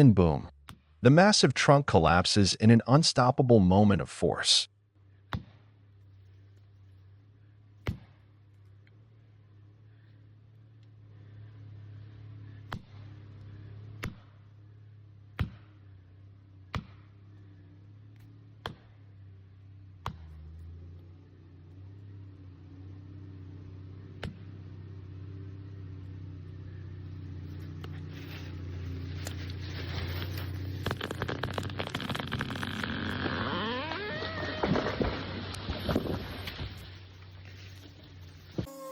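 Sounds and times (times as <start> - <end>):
low engine hum: 4.8 - 38.9
rough noise: 28.0 - 38.7.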